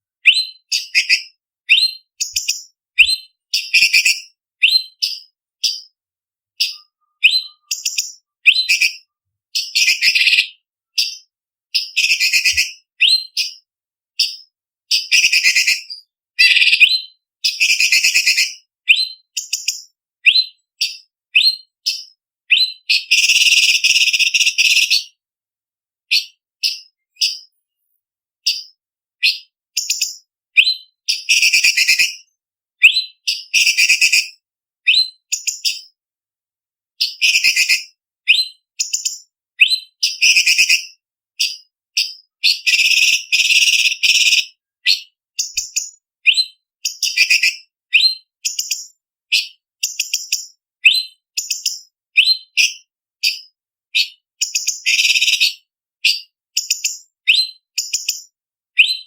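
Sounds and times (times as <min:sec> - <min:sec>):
bird whistled song: 0:00.2 - 0:06.0, 0:06.6 - 0:25.2, 0:26.1 - 0:27.5, 0:28.4 - 0:36.0, 0:37.0 - 0:59.0
bird harsh chattering: 0:15.2 - 0:17.0.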